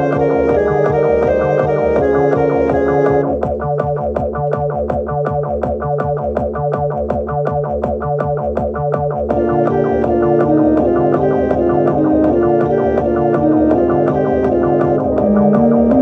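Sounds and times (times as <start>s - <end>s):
higher melody: 0.0s - 3.4s, 9.3s - 16.0s
repeating bass line: 0.0s - 3.8s, 9.3s - 16.0s
instrumental music with beat: 0.0s - 16.0s.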